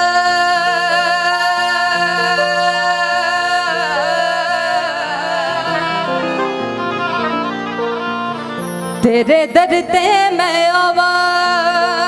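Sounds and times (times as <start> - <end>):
woman singing a long wavering note: 0.0 - 6.4
instrumental accompaniment: 0.0 - 12.0.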